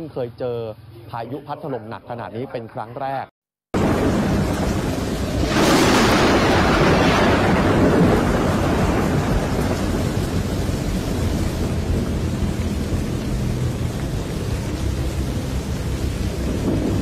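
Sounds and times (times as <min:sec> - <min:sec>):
steady rain: 0:03.8 - 0:17.0
thunderclap rumbling: 0:03.8 - 0:17.0.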